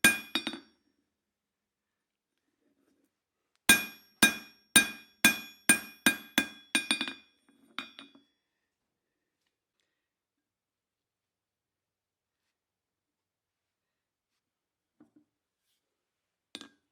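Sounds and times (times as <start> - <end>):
hammer striking steel on anvil: 0.0 - 0.6, 3.7 - 7.2.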